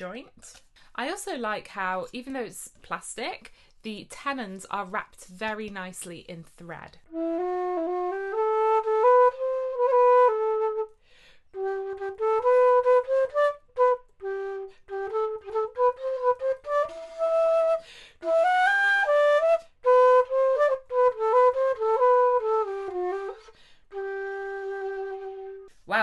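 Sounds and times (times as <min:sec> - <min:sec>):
flute melody: 0:07.1 - 0:25.8
player breathing: 0:11.0 - 0:11.5, 0:17.8 - 0:18.2.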